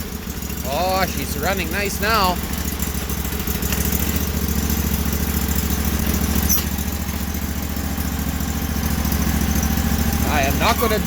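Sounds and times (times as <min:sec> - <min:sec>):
small engine running: 0:00.0 - 0:11.0.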